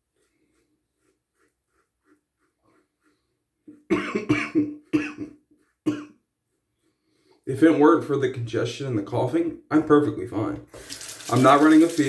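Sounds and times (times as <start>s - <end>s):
man coughing harshly: 3.9s - 6.1s.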